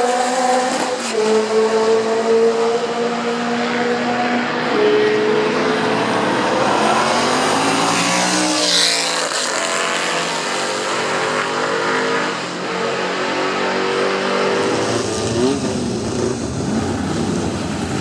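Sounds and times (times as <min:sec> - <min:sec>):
racing car engine passing: 0:00.0 - 0:18.0.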